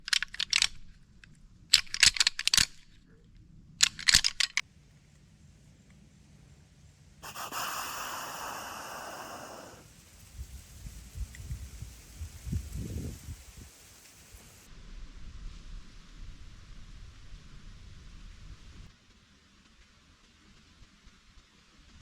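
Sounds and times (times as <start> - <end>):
antlers clacking together: 0.0 - 0.9, 1.7 - 2.9, 3.8 - 4.6
deer snort-wheeze: 7.2 - 9.9.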